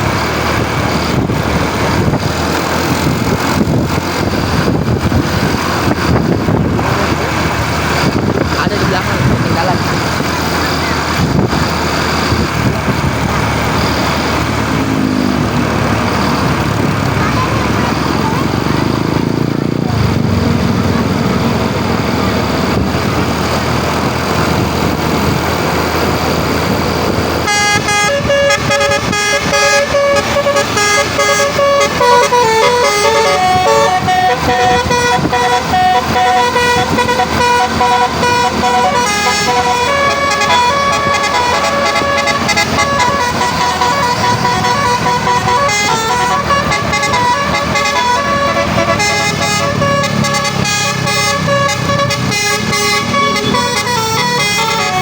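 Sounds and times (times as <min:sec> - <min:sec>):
steady vehicle noise: 0:00.0 - 0:55.0
multi-tone bus horn tune: 0:23.8 - 0:55.0.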